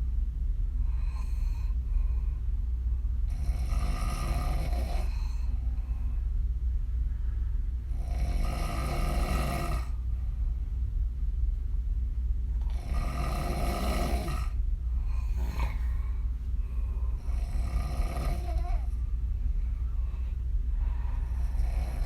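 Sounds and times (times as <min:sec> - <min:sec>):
steady low hum: 0:00.0 - 0:22.0
woman snoring: 0:03.3 - 0:05.5, 0:07.9 - 0:10.0, 0:12.6 - 0:14.6, 0:17.2 - 0:19.0, 0:21.2 - 0:22.0.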